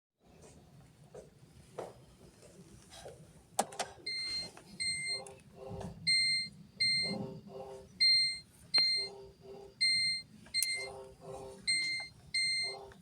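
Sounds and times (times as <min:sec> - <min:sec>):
electronic alarm beeping: 0:04.0 - 0:13.0.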